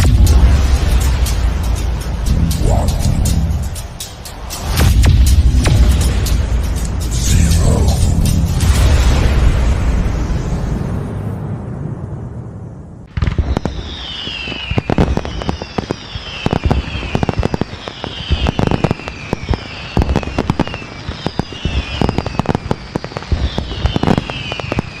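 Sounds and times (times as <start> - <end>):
fireworks bangs and crackles: 0.0 - 25.0
falling firework whistles: 13.2 - 25.0.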